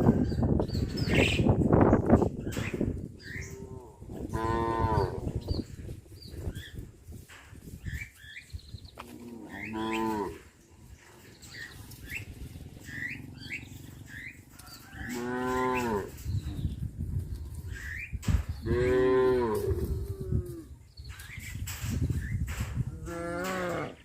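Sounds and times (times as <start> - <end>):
cows mooing: 3.4 - 5.3, 9.0 - 10.5, 14.6 - 16.6, 18.6 - 20.7, 23.0 - 24.0.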